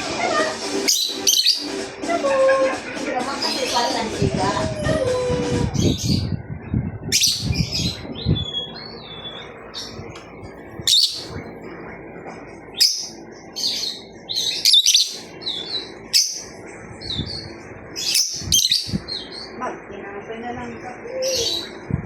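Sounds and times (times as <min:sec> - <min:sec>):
bird chirping and squawking: 0:00.3 - 0:02.8, 0:03.4 - 0:06.4, 0:07.0 - 0:10.1, 0:10.7 - 0:11.4, 0:12.7 - 0:19.6, 0:21.2 - 0:21.8.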